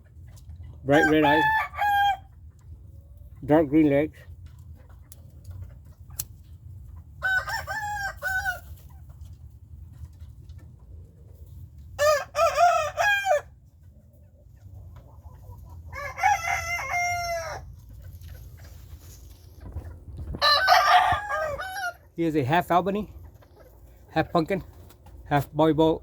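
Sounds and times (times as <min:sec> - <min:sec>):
roosters crowing: 0:00.8 - 0:02.3, 0:07.2 - 0:08.8, 0:12.0 - 0:13.6, 0:15.8 - 0:17.8, 0:20.3 - 0:22.2.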